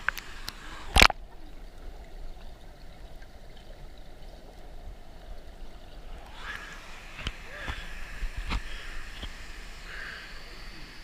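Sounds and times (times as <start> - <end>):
flowing water at a waterfall: 6.0 - 11.0.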